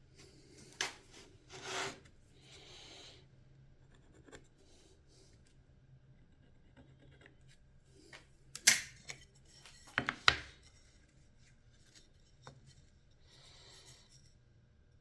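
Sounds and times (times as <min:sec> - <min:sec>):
clicks and knocks on workbench: 0:09.9 - 0:10.6.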